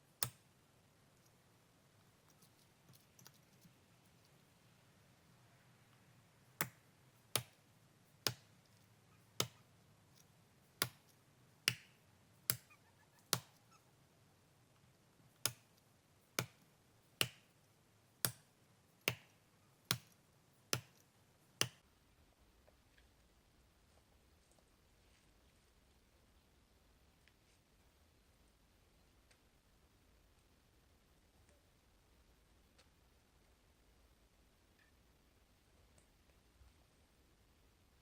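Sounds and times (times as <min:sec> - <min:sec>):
axe chopping wood: 0:07.4 - 0:07.6, 0:10.8 - 0:11.1, 0:11.7 - 0:12.6.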